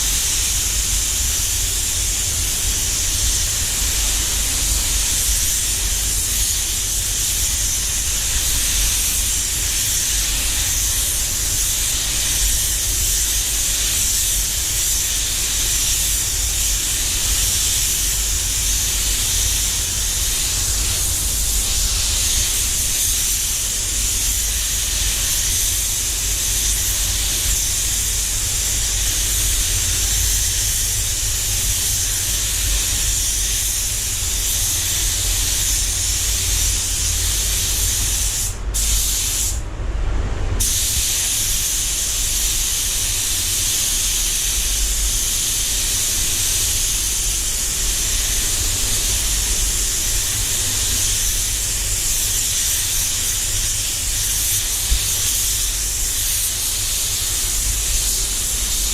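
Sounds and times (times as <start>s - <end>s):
air spray gun hissing: 0.0s - 39.6s, 40.6s - 58.9s
low steady rumble: 16.4s - 43.7s.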